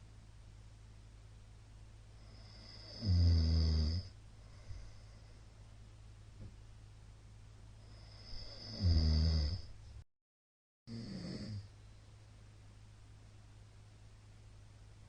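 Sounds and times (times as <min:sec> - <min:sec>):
steady low hum: 0:00.0 - 0:10.0, 0:10.9 - 0:15.0
man snoring loudly: 0:02.2 - 0:04.1, 0:07.9 - 0:09.7, 0:10.9 - 0:11.7.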